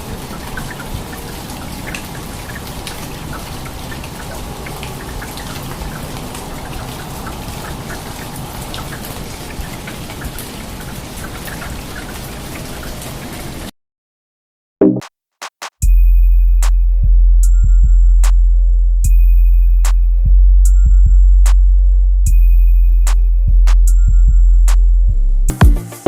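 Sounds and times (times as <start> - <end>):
heavy rain: 0.0 - 13.7
raindrops ticking on hard surfaces: 0.0 - 13.7.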